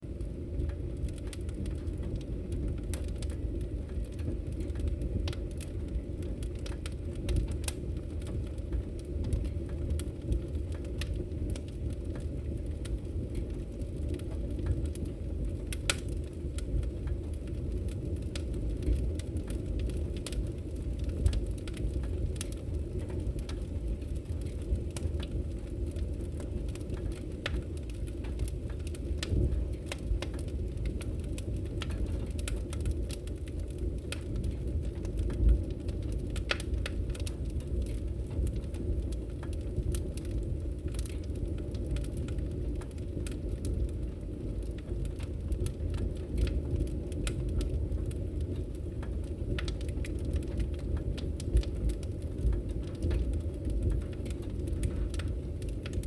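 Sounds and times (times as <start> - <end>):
wood crackling and popping: 0.0 - 56.0
campfire flame rushing: 0.1 - 56.0.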